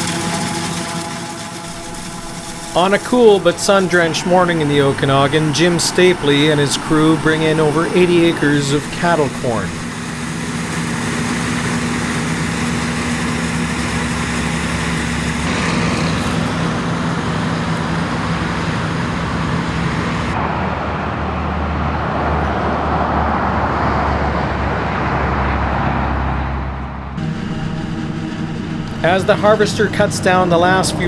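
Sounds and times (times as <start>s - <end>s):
harvesting machinery running: 0.0s - 20.5s, 27.2s - 31.0s.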